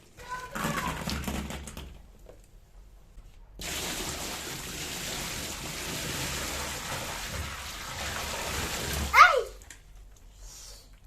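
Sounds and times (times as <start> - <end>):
tap water running into sink: 3.6 - 9.2.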